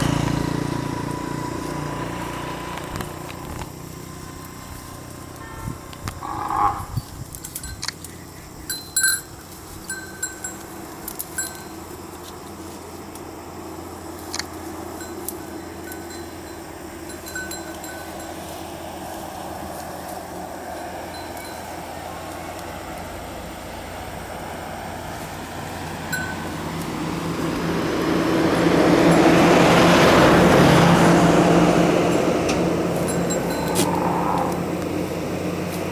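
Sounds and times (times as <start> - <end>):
vehicle running noise: 0.0 - 35.9
small metal bell jingling: 5.4 - 11.9, 15.0 - 18.6, 20.8 - 21.8, 26.1 - 26.5, 33.0 - 33.9.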